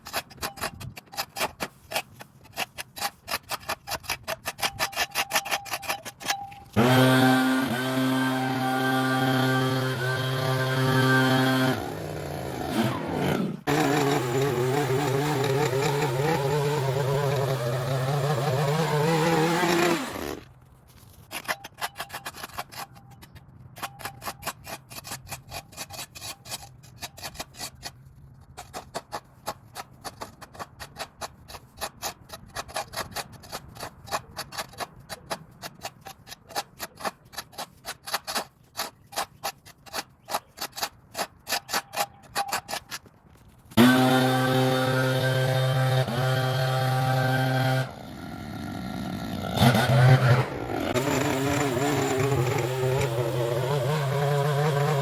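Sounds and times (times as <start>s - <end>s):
hand tool scraping ground: 0.0s - 55.0s
small engine running: 6.8s - 20.4s, 43.8s - 55.0s.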